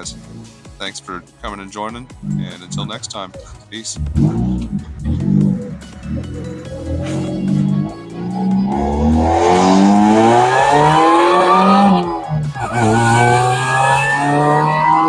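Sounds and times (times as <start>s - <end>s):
car engine accelerating: 2.1s - 3.0s, 4.0s - 15.0s
supercharger whine: 4.1s - 15.0s.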